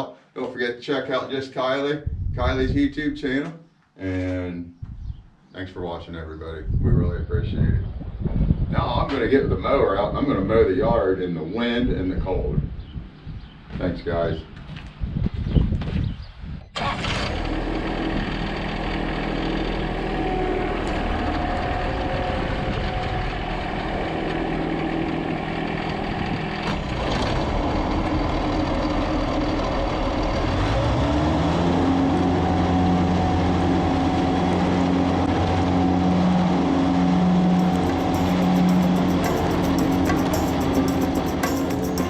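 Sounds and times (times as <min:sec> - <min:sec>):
lawn mower engine running: 0:16.8 - 0:42.0.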